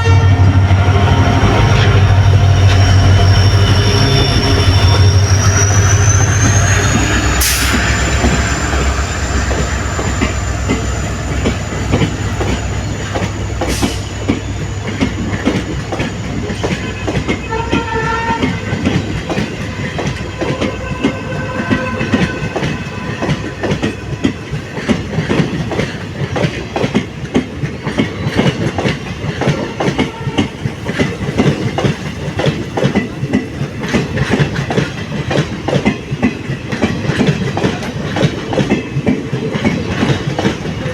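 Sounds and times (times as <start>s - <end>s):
diesel locomotive rumble: 0.0s - 40.9s
train wheels clicking over rail joints: 0.7s - 40.9s.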